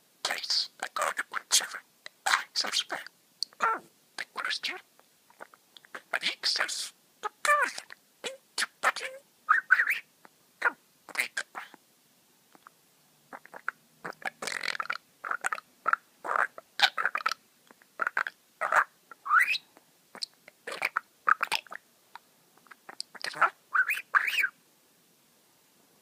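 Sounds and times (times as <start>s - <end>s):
budgerigar chirping and chattering: 5.4s - 11.8s, 13.3s - 17.4s, 18.0s - 19.6s, 20.2s - 21.8s, 22.6s - 24.6s.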